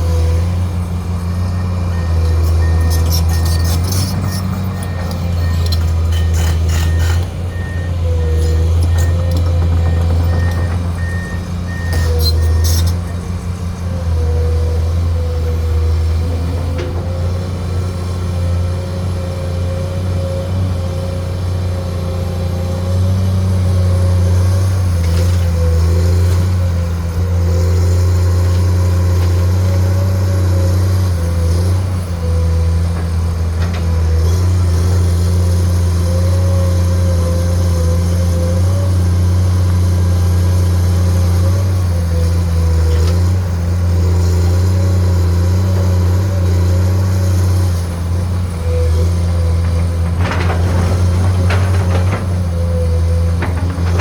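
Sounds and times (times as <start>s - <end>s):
excavator engine running: 0.0s - 54.0s.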